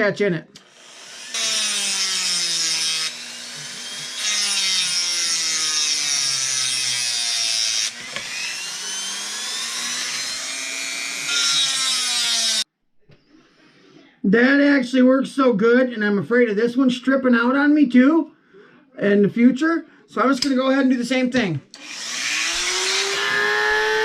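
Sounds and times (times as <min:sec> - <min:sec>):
harsh grinding on metal: 0:00.6 - 0:12.6, 0:21.8 - 0:24.0
power tool motor whine: 0:00.6 - 0:12.6, 0:21.8 - 0:24.0.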